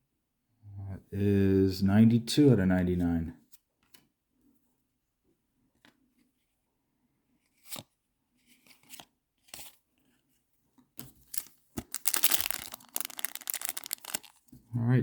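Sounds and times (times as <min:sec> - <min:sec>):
foil pack tearing: 0:11.3 - 0:14.4.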